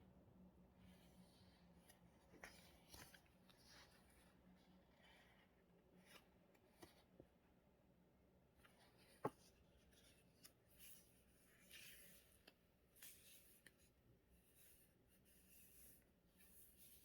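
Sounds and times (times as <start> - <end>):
paper rustling: 8.6 - 17.0.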